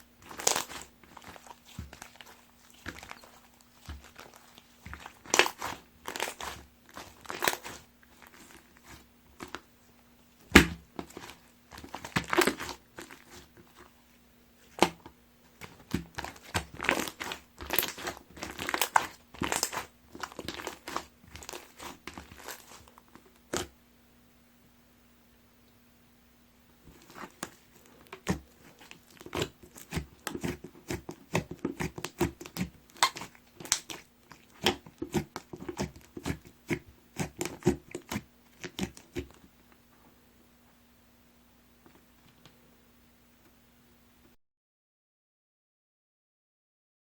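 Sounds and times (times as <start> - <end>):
slime crackling and squishing: 0.0 - 9.7, 10.4 - 14.0, 14.6 - 23.7, 26.9 - 39.4
faint steady hum: 0.0 - 44.4.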